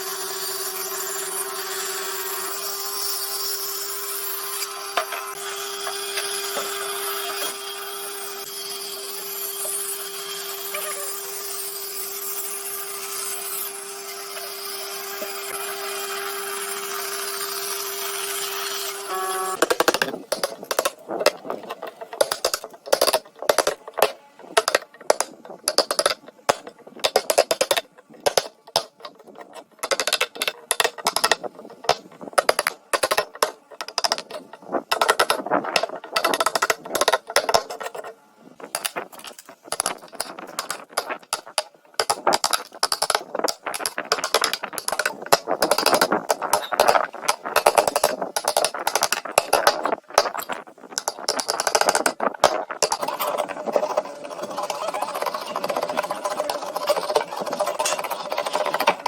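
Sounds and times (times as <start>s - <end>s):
hand tools knocking on wood: 22.2s - 28.9s, 29.8s - 37.8s, 39.7s - 50.4s, 51.0s - 53.0s.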